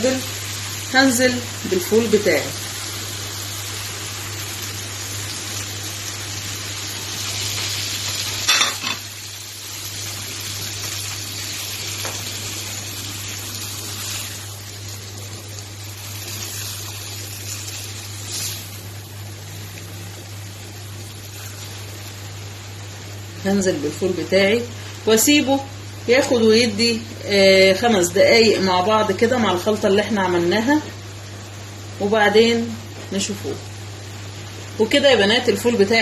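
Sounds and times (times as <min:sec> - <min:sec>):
beans sizzling in frying pan: 0:00.0 - 0:36.0.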